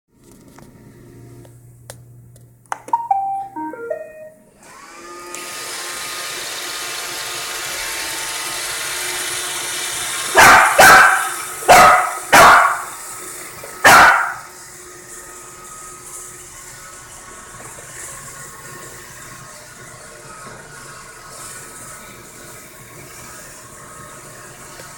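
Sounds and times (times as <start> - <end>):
robot vacuum tune: 2.9 - 5.6
dog barking: 10.3 - 12.9, 13.8 - 14.5.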